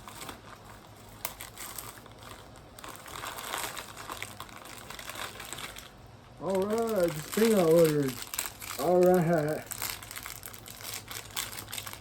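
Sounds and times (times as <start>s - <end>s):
packaging crinkling and tearing: 0.0s - 12.0s
packaging rustling: 0.0s - 12.0s
knife cutting package: 6.4s - 12.0s.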